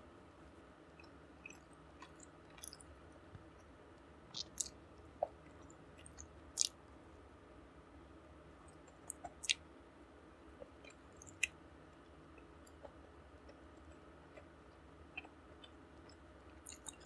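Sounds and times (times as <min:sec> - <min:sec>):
chewing with wet mouth clicks: 0:01.0 - 0:02.9, 0:04.4 - 0:06.8, 0:08.9 - 0:09.6, 0:10.6 - 0:11.6, 0:15.2 - 0:17.0.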